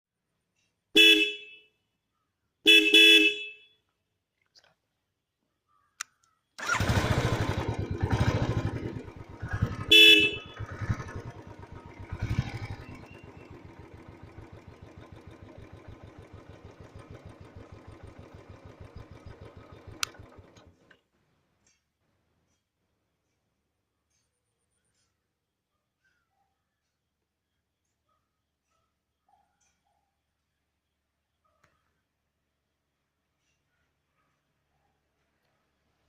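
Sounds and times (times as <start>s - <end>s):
motorcycle horn: 1.0s - 1.8s, 2.7s - 3.8s, 7.5s - 14.5s
motorcycle engine revving and idling: 6.6s - 21.0s.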